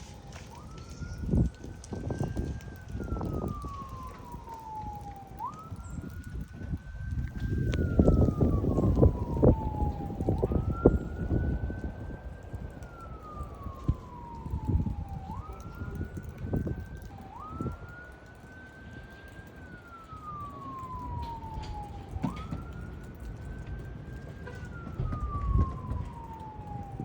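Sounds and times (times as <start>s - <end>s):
emergency vehicle siren wailing: 0.0s - 27.0s
low rumbling noise: 5.3s - 17.7s.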